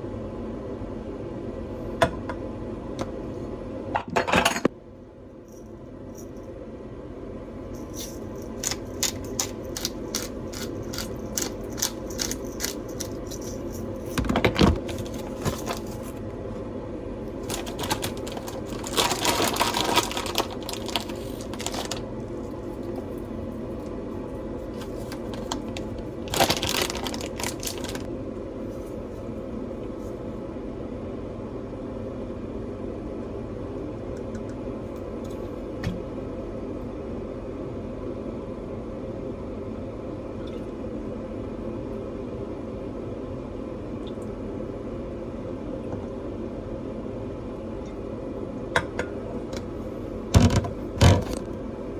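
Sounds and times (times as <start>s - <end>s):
steady hum: 0.0s - 51.9s.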